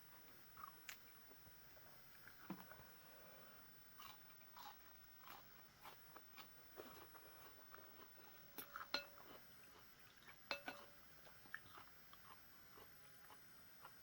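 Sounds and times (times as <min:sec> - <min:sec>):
quiet chewing: 0:04.0 - 0:14.0
utensil clinking against bowl: 0:08.6 - 0:09.4, 0:10.5 - 0:11.0.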